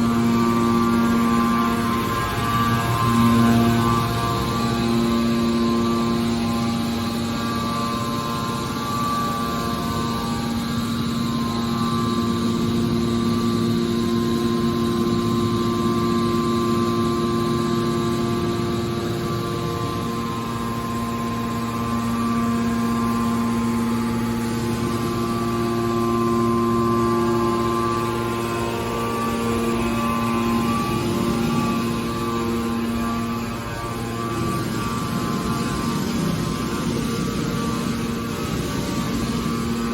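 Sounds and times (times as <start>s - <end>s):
motor and pump humming: 0.0s - 39.9s.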